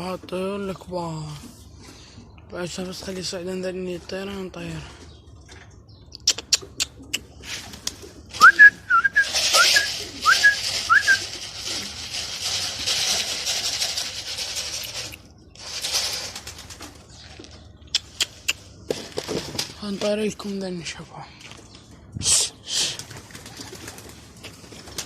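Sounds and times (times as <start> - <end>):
pigeon wings flapping: 7.5 - 15.1, 15.8 - 17.0, 22.9 - 25.0
short rising whistles: 8.4 - 11.2.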